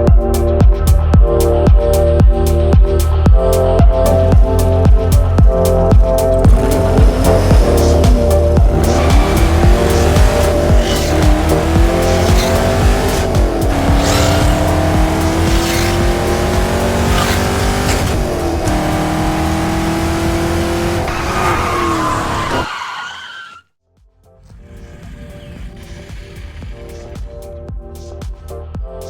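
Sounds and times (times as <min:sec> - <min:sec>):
car engine revving: 0:04.2 - 0:22.8, 0:24.4 - 0:27.4
tyre squeal: 0:06.5 - 0:18.9, 0:20.6 - 0:23.6.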